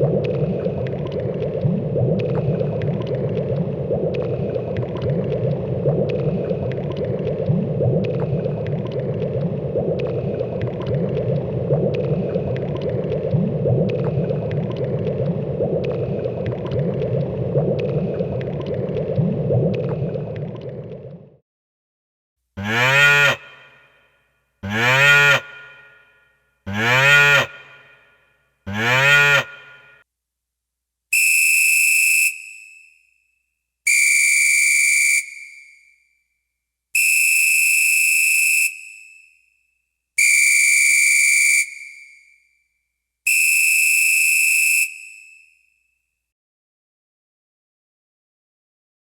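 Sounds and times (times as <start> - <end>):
cow mooing: 22.6 - 23.6, 24.6 - 25.6, 26.7 - 27.6, 28.7 - 29.8
high-pitched whistle blasts: 31.2 - 33.2, 33.9 - 36.0, 37.0 - 39.5, 40.2 - 42.4, 43.3 - 45.8.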